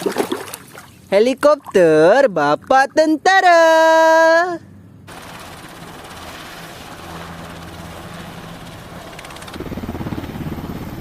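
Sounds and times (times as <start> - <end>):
helicopter rotor chop: 5.0 - 11.0.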